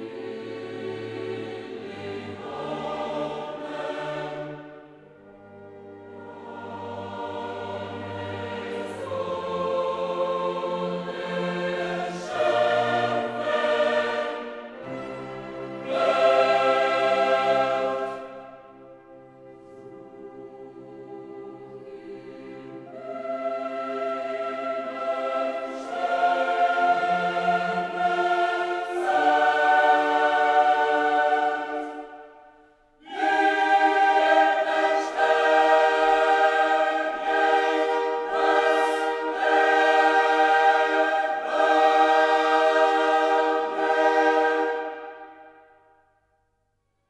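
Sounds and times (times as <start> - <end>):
choir singing held chords: 0.0 - 46.3
orchestral backing: 33.1 - 45.5.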